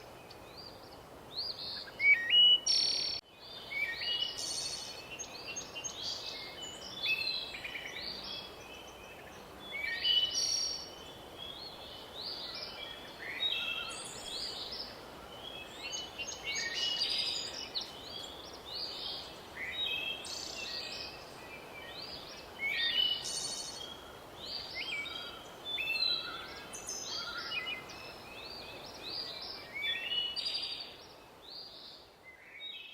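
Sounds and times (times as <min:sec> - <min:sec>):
faint steady hiss: 0:00.0 - 0:32.9
songbirds singing: 0:00.0 - 0:32.9.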